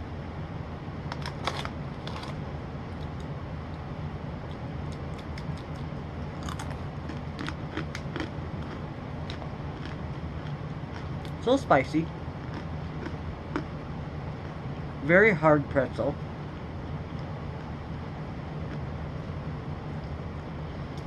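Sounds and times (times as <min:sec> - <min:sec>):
steady low hum: 0:00.0 - 0:21.0
crunching on hard pretzel: 0:04.5 - 0:11.4, 0:12.3 - 0:13.7.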